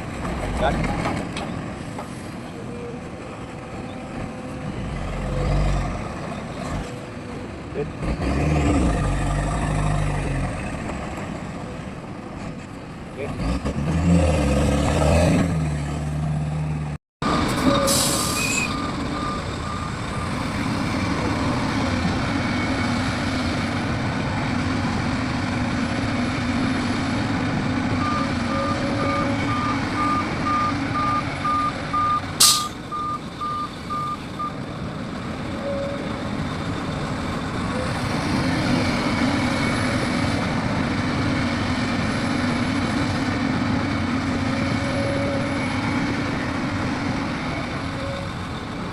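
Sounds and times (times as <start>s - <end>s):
air brake hisses: 17.8s - 18.7s, 32.4s - 32.8s
reversing alarm beeping: 18.6s - 20.4s, 28.0s - 34.6s.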